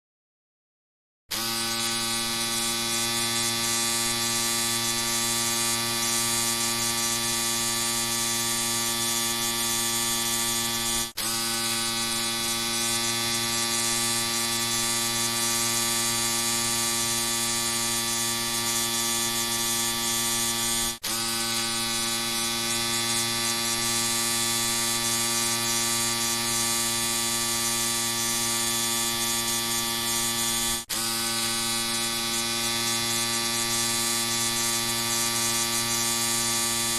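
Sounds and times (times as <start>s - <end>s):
electric shaver buzzing: 1.3s - 36.9s.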